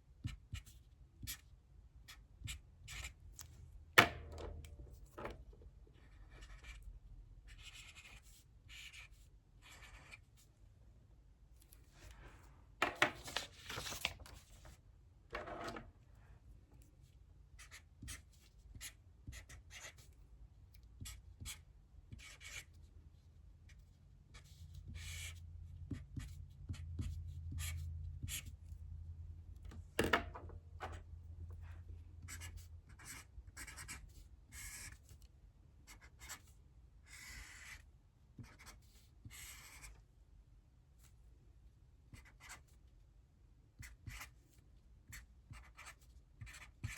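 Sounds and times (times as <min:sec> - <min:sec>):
pen scratching on paper: 0:06.0 - 0:06.9, 0:07.5 - 0:10.4, 0:17.6 - 0:20.1, 0:21.0 - 0:22.8, 0:24.3 - 0:28.6, 0:32.3 - 0:35.0, 0:35.9 - 0:36.5, 0:37.1 - 0:37.8, 0:38.4 - 0:40.0, 0:42.2 - 0:42.6, 0:43.8 - 0:44.4, 0:45.1 - 0:46.9.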